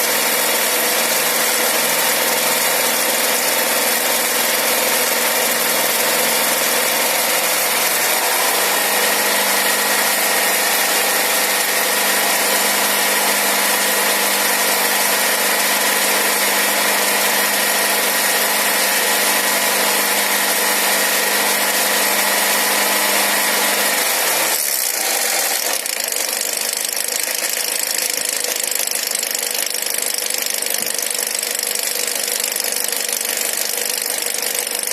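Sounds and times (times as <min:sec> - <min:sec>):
car engine knocking: 0:25.8 - 0:34.9.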